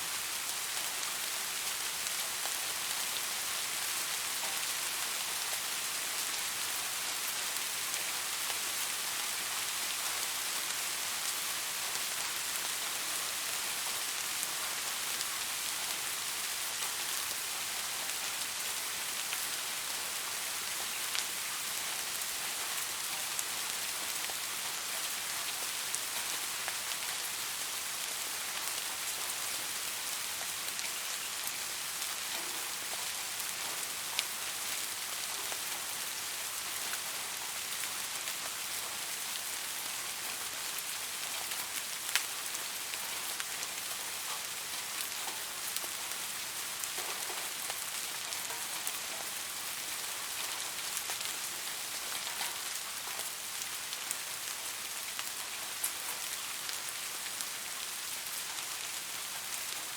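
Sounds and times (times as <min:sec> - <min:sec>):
steady rain hissing: 0:00.0 - 0:59.9.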